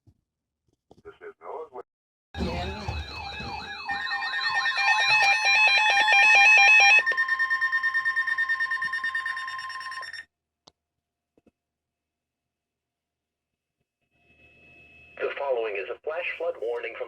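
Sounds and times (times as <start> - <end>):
electronic alert tones: 2.4 - 10.2.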